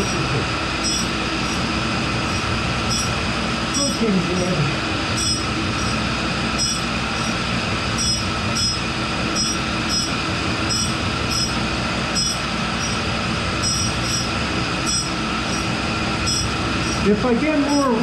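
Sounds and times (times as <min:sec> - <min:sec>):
grinding wheel on steel: 0:00.0 - 0:18.0
high squeals: 0:05.1 - 0:06.0, 0:13.6 - 0:17.1.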